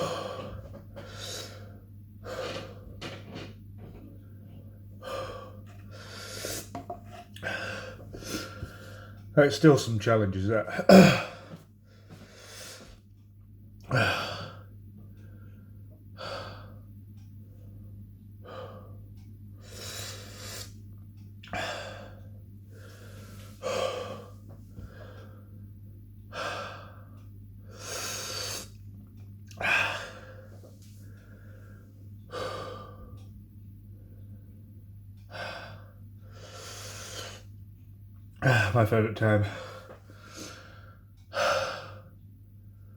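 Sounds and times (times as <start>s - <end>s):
man breathing hard: 7.4s - 9.3s, 13.9s - 16.9s, 21.5s - 25.6s, 26.3s - 28.8s, 29.5s - 33.3s, 35.2s - 37.5s, 39.4s - 42.2s.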